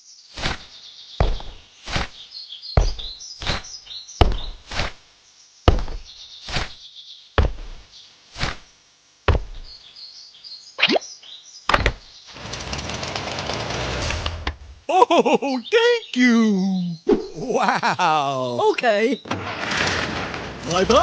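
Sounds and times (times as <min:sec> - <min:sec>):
faint bird-like chirps: 0:00.0 - 0:08.8, 0:09.5 - 0:12.3, 0:15.0 - 0:17.6
sharp knocks with deep thud: 0:01.2 - 0:02.1, 0:02.8 - 0:05.0, 0:05.7 - 0:06.8, 0:07.4 - 0:07.8, 0:09.3 - 0:09.8.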